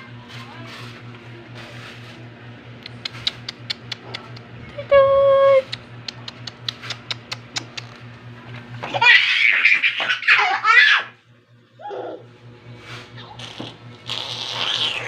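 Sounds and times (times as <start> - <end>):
high-pitched laughter: 8.9 - 11.1.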